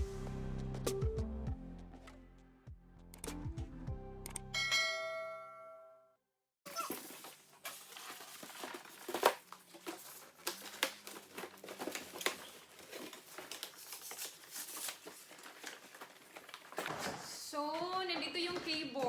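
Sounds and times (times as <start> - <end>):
cardboard and plastic rustling: 6.7 - 19.0.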